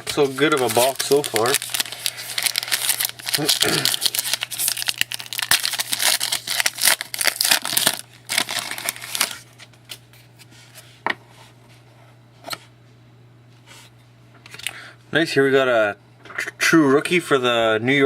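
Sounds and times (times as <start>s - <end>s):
foil wrapper crinkling and tearing: 0.1s - 10.0s.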